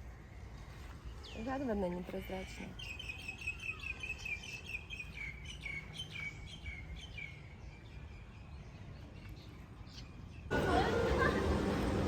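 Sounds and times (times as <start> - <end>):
low steady rumble: 10.5 - 12.0.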